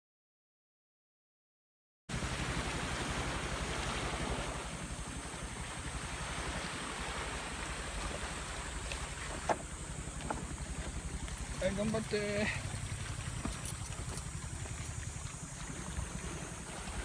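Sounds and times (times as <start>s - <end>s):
boat engine hum: 2.1s - 17.0s
wind and water rushing: 2.1s - 17.0s.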